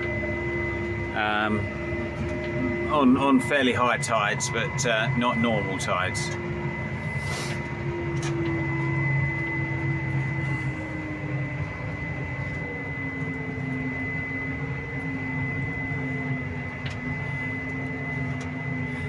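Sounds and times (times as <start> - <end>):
thin high whine: 0.0 - 13.2
vehicle engine running: 0.0 - 19.0.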